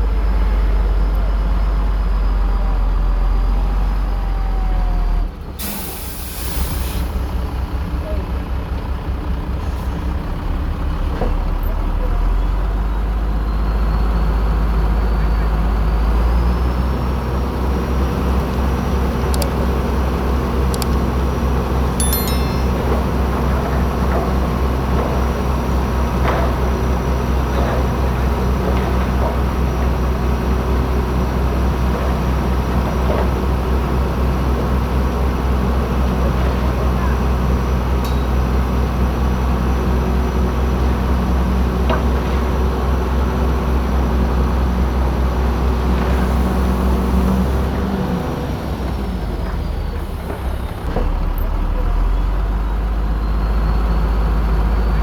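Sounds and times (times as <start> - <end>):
metal clanks: 22.0 - 23.3.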